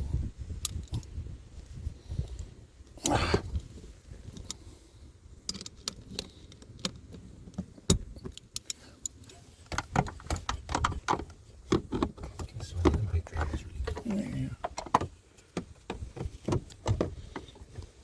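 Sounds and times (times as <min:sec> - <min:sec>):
tools and parts clicking and rattling: 0:00.6 - 0:01.2, 0:05.4 - 0:15.1.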